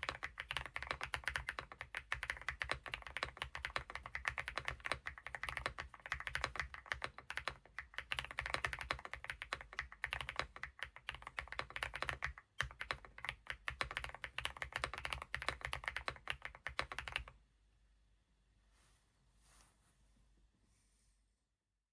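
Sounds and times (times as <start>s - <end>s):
mechanical keyboard typing: 0.0s - 17.4s.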